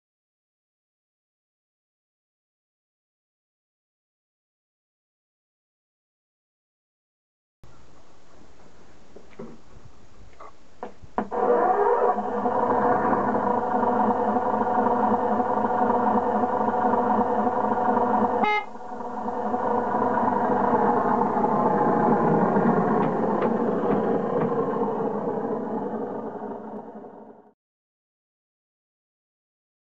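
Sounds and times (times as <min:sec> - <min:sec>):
diesel engine sound effect: 0:11.2 - 0:27.6
short horn toot: 0:18.4 - 0:18.7.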